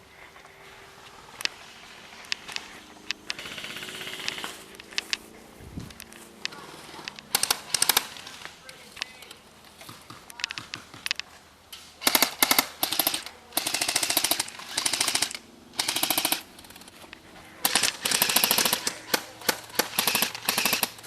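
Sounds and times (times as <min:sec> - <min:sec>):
airsoft guns firing: 0:07.3 - 0:08.5, 0:12.0 - 0:16.8, 0:17.6 - 0:21.0.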